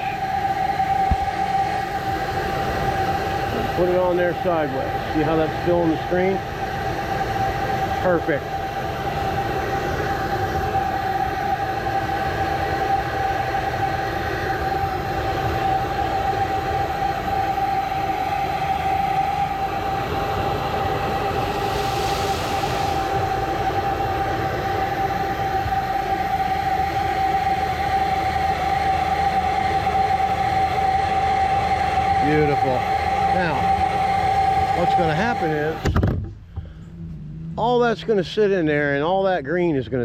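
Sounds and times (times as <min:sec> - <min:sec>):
pressure washer whine: 0:00.0 - 0:39.4
water spray hissing: 0:21.4 - 0:23.9.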